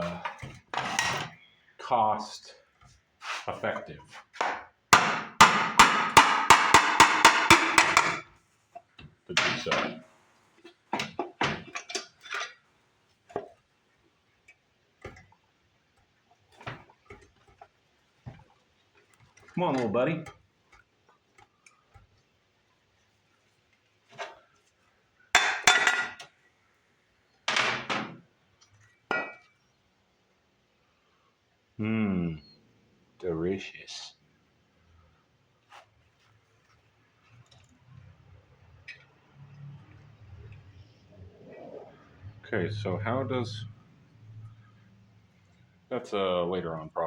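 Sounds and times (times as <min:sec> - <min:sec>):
metal tools knocking and clicking: 0:05.8 - 0:08.3, 0:25.4 - 0:26.3.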